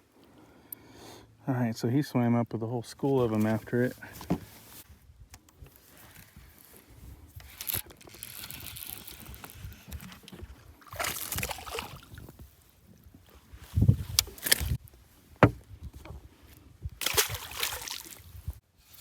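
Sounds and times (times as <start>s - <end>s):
water lapping against boat hull: 7.5s - 16.2s.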